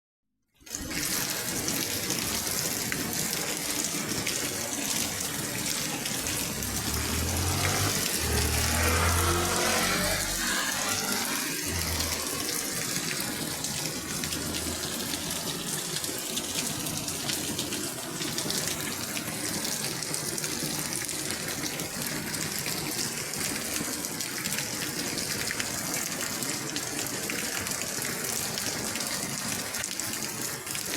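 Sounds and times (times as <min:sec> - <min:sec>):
rain falling: 0:00.7 - 0:30.9
low rumbling: 0:05.7 - 0:13.0.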